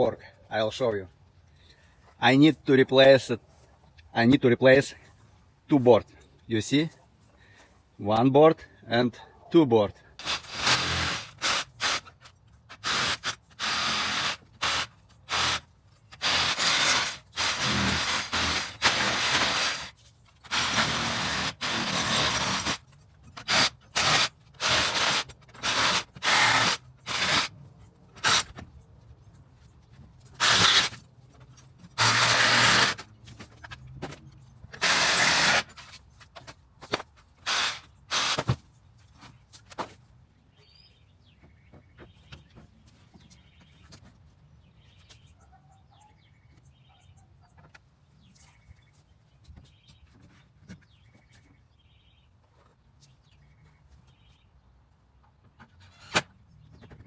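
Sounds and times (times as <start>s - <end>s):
power tool bursts on fence boards: 10.2s - 27.5s, 28.2s - 28.6s, 30.3s - 31.1s, 31.8s - 33.1s, 34.7s - 36.0s, 36.9s - 38.6s, 55.8s - 56.3s.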